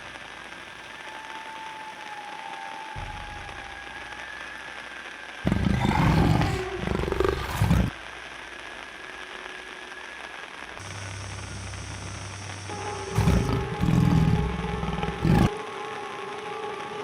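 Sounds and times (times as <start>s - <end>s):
tiger growling: 5.5s - 7.9s, 12.8s - 15.5s
steady hum: 10.8s - 17.0s.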